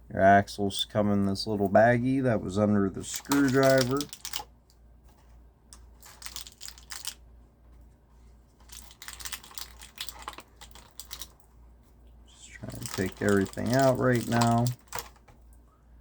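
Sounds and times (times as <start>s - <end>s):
plastic bags crinkling: 3.0s - 4.4s, 6.0s - 7.2s, 8.6s - 11.4s, 12.6s - 15.2s
plastic parts clicking: 3.1s - 4.5s, 5.7s - 7.2s, 8.7s - 11.4s, 12.6s - 15.3s.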